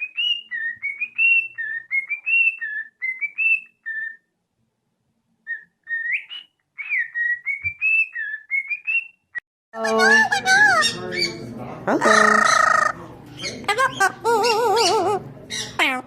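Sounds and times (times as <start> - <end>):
parrot whistling a tune: 0.0 - 4.3, 5.5 - 9.2.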